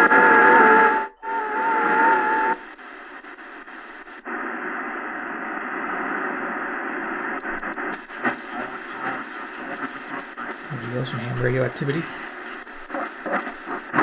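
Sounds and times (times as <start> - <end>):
radio crackles: 1.2 - 13.5
radio static hiss: 1.2 - 14.0.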